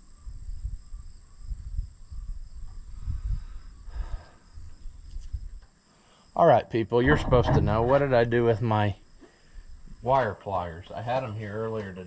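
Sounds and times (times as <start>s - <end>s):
crickets droning: 0.0s - 12.0s
wind gusting on microphone: 0.3s - 5.6s, 7.0s - 8.9s.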